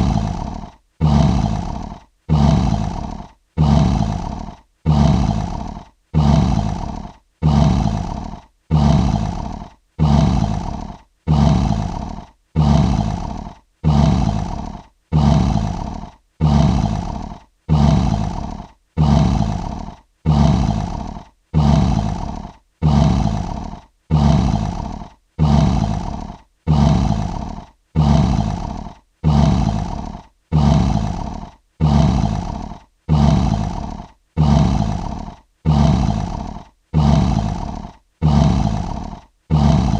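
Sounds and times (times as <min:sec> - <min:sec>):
lion roar: 0:00.0 - 0:39.9.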